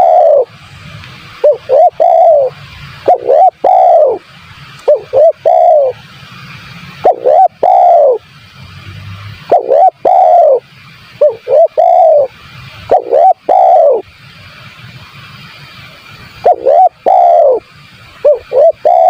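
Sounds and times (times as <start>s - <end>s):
dove cooing: 0.0s - 0.5s, 1.4s - 4.2s, 4.9s - 6.0s, 7.0s - 8.2s, 9.5s - 10.6s, 11.2s - 12.3s, 12.9s - 14.1s, 16.4s - 19.0s.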